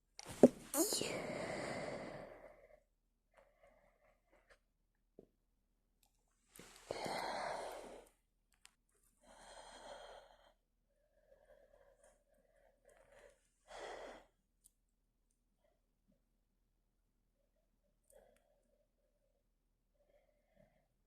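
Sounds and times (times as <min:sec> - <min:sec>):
woman breathing heavily: 0:06.8 - 0:08.1.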